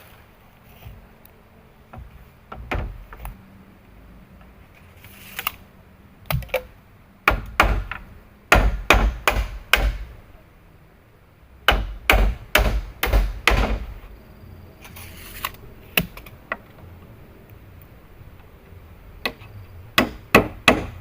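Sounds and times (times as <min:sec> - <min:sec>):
tool striking wood: 0:07.3 - 0:10.1, 0:11.7 - 0:14.0, 0:20.0 - 0:21.0.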